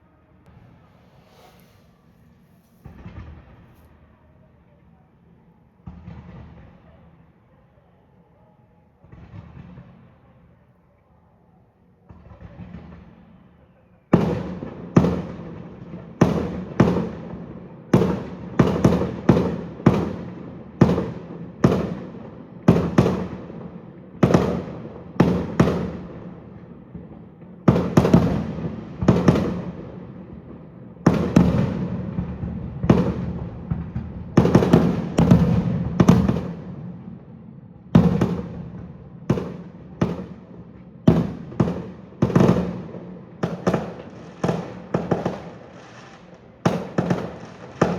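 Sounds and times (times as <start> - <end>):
fireworks bursting with bangs: 0.4 - 4.1, 14.2 - 47.9.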